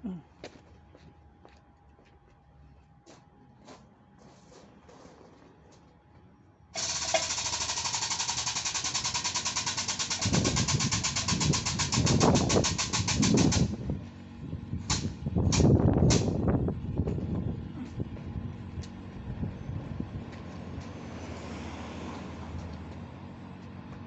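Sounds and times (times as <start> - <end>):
compressed-air tool hissing and pulsing: 6.8 - 13.8.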